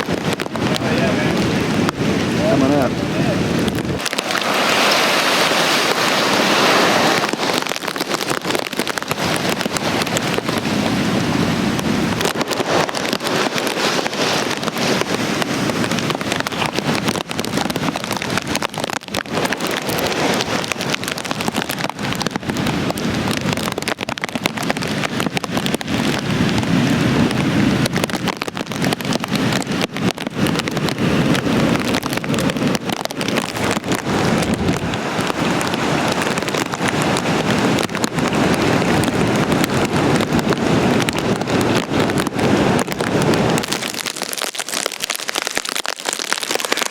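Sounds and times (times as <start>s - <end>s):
wind buffeting microphone: 0.0s - 44.4s
heavy rain: 0.0s - 46.9s
hurricane wind: 0.0s - 46.9s.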